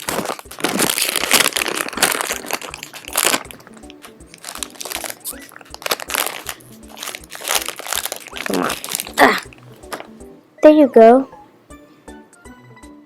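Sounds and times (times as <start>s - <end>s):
plastic packaging crinkling: 0.0s - 10.2s
background music with a beat: 11.5s - 13.0s.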